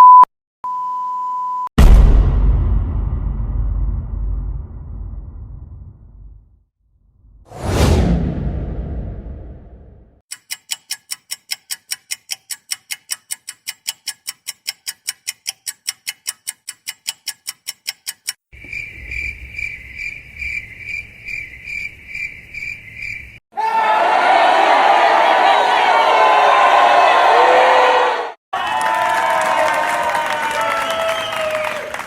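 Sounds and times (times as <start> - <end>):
low rumble: 1.8 - 10.2
whoosh: 7.2 - 10.2
fast even ticking: 10.3 - 21.4
crickets chirping: 18.6 - 23.4.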